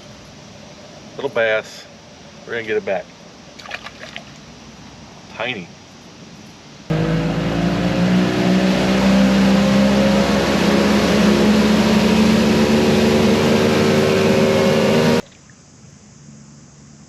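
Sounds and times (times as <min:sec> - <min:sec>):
motorboat engine running: 0:06.9 - 0:15.4.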